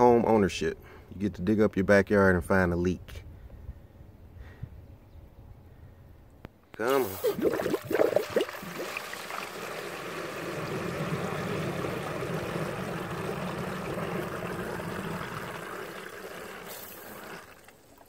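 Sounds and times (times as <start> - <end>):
water rushing from leaking pipe: 6.9 - 18.0.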